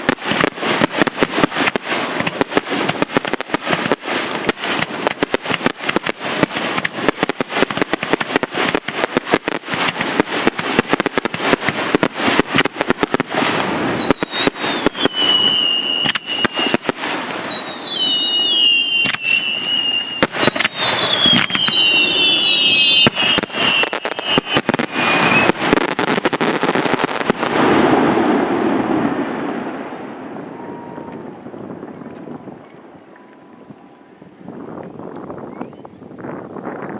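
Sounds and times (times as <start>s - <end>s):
fireworks bangs and crackles: 0.0s - 33.3s
fireworks whistles falling in pitch: 11.9s - 27.3s.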